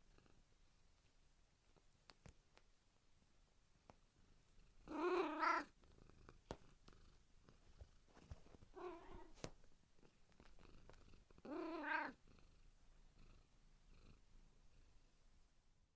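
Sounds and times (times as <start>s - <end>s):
cat purring: 0.0s - 1.8s, 4.2s - 15.1s
cat meowing: 4.9s - 5.7s, 8.8s - 9.4s, 11.5s - 12.2s.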